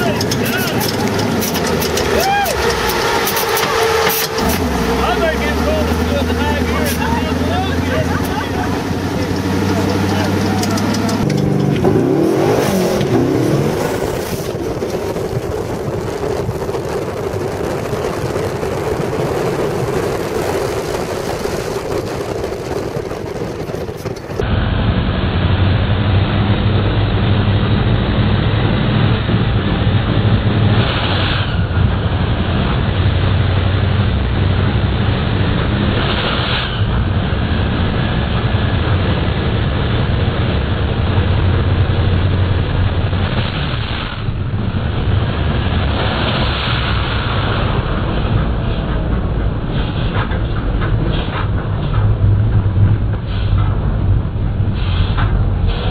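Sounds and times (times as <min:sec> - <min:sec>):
engine revving hard: 0:00.0 - 0:14.6
dull steady engine drone: 0:00.0 - 0:55.9.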